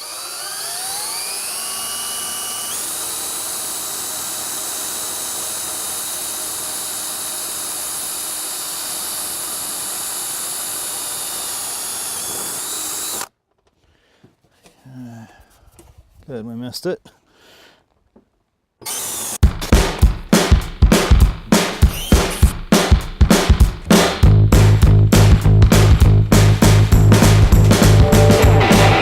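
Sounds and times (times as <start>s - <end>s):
power drill whining: 0.0s - 13.3s, 18.8s - 19.4s, 21.8s - 22.5s.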